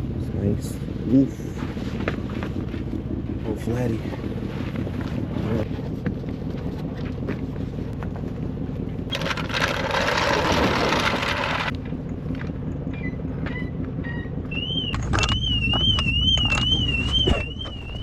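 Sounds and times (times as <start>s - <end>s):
vehicle humming: 0.0s - 18.0s
car alarm warbling: 12.9s - 18.0s.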